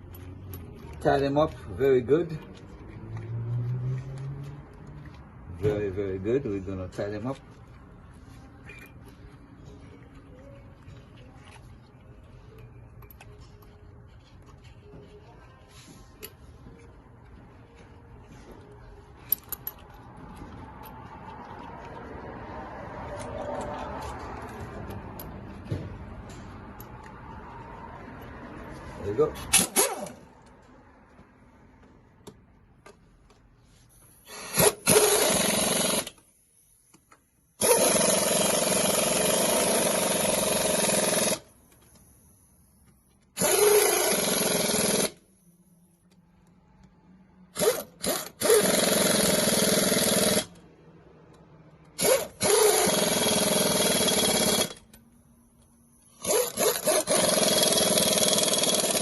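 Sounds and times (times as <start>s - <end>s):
impact wrench running: 29.4s - 30.2s, 34.2s - 36.4s, 37.6s - 41.8s, 43.4s - 45.3s, 47.5s - 50.6s, 51.9s - 55.0s, 56.0s - 59.0s.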